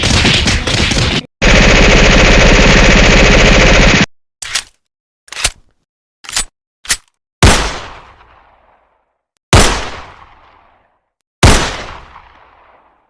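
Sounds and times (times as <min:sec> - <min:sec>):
echoing gunshots: 0:07.4 - 0:08.9, 0:09.6 - 0:13.0.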